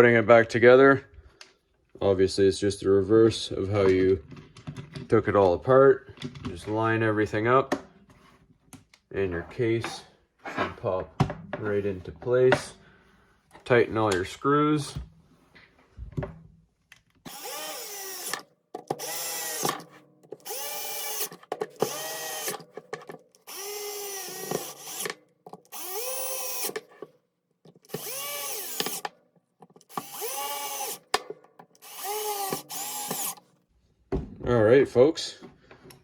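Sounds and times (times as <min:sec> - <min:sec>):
electric drill motor bursts: 0:17.3 - 0:22.6, 0:23.4 - 0:27.0, 0:27.8 - 0:29.1, 0:29.8 - 0:33.4.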